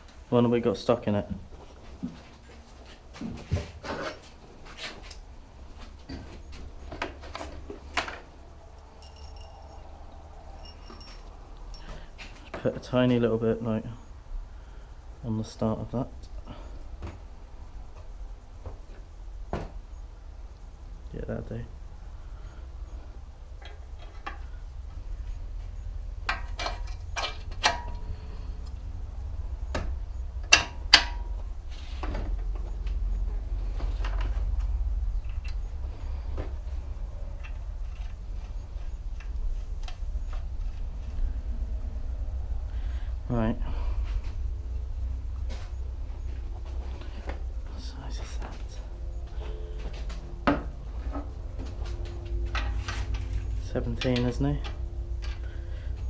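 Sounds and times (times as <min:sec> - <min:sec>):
low steady hum: 0:00.0 - 0:56.0
metal parts knocking and clinking: 0:08.9 - 0:09.9, 0:10.6 - 0:12.0, 0:26.3 - 0:28.0.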